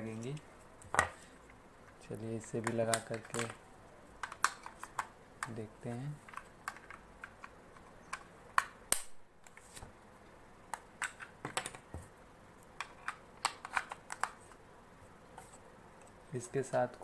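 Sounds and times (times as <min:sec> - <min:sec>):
plastic clicks and snaps: 0:01.9 - 0:03.6, 0:04.2 - 0:05.6, 0:12.7 - 0:14.4.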